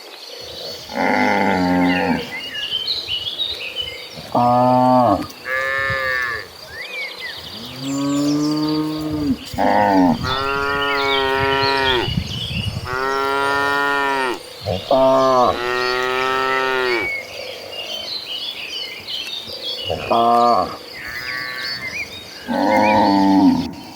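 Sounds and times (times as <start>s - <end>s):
cows mooing: 0.9s - 2.4s, 4.2s - 6.5s, 7.6s - 12.2s, 12.8s - 17.1s, 22.5s - 23.9s.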